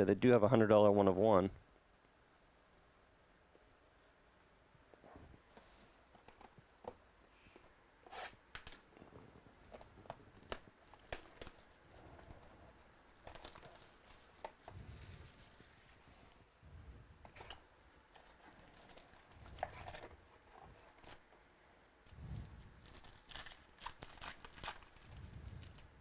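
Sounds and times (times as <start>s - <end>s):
cards clicking and rustling: 9.8s - 14.8s
wrappers tearing and crinkling: 10.3s - 14.7s, 18.1s - 21.2s, 22.6s - 25.9s.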